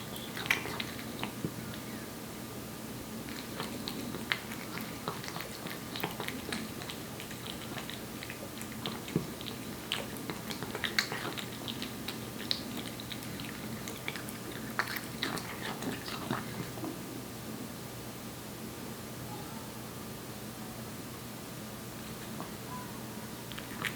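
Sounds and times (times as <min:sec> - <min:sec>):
cat eating wet food: 0:00.0 - 0:02.1, 0:03.0 - 0:17.1, 0:22.0 - 0:22.6, 0:23.4 - 0:23.9.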